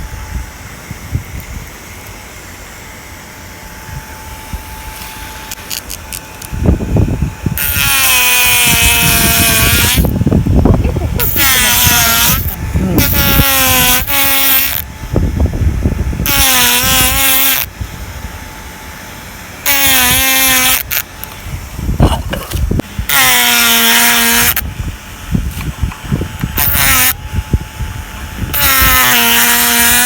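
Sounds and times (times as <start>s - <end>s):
power carving tool whining: 3.9s - 17.8s, 18.4s - 21.5s, 22.4s - 24.7s, 25.4s - 30.0s.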